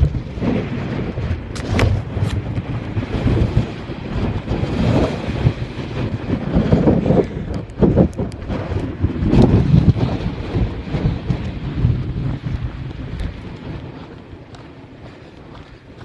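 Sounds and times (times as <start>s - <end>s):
gusty wind buffeting microphone: 0.0s - 16.0s.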